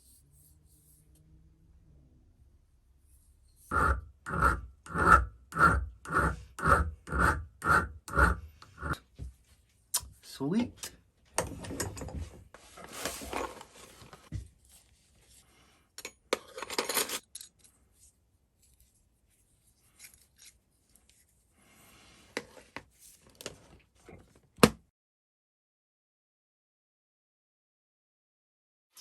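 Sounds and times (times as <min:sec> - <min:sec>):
metal file scraping and clicking: 0:03.5 - 0:09.0.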